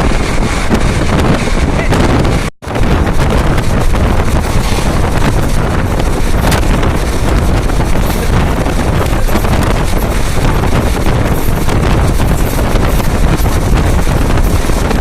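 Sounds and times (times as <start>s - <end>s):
train running noise: 0.0s - 15.0s
wind buffeting microphone: 0.0s - 15.0s.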